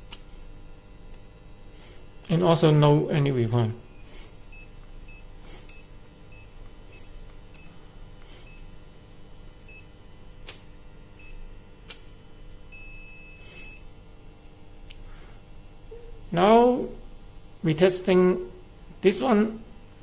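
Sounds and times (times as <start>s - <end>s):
multimeter buzzer beeping: 2.3s - 14.1s.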